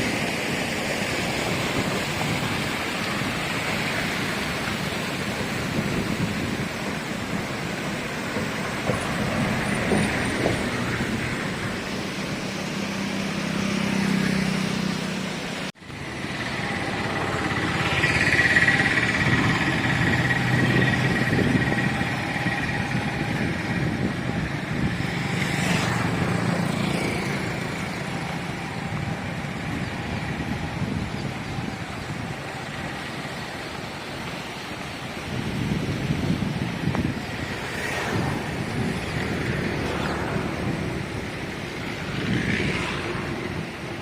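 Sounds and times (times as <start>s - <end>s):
road and wind noise: 0.0s - 44.0s
vehicle engine running: 15.8s - 24.9s.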